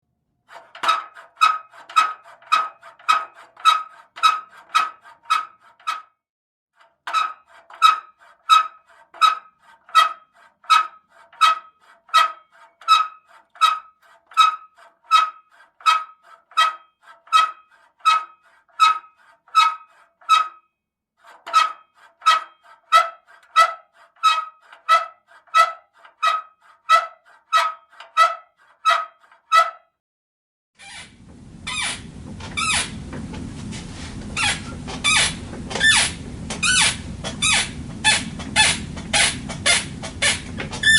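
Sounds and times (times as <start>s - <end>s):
bed squeaking rhythmically: 30.8s - 40.9s.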